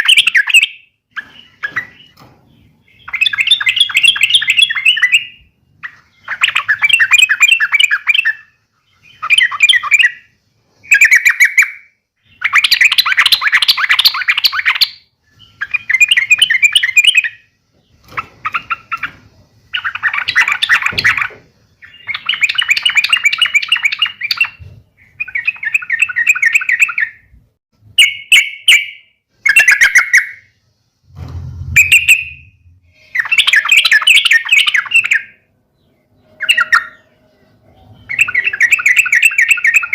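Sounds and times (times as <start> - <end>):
low bump: 31.0 - 33.0.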